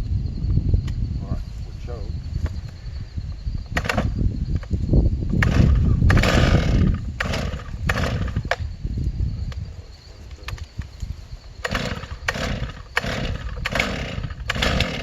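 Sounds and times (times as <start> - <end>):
chainsaw running: 3.8 - 4.2, 5.3 - 8.6, 11.6 - 15.0.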